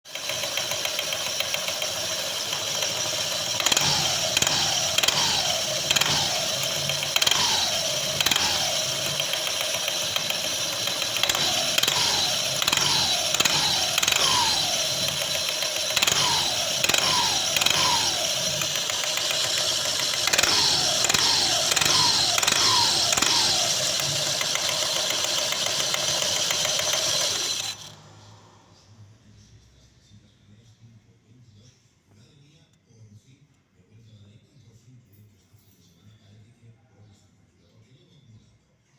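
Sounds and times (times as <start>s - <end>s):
scooter engine idling and revving: 0.1s - 29.0s.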